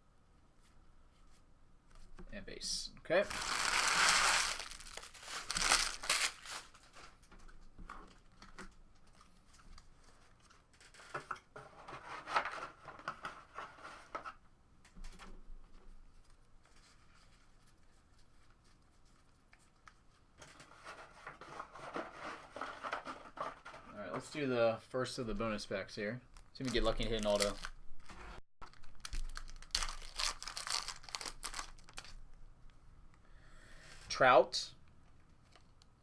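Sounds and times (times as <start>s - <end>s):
wrappers crinkled and torn: 3.2s - 7.2s, 26.4s - 27.8s, 28.6s - 32.2s
cards being handled: 3.3s - 7.1s, 26.6s - 27.7s.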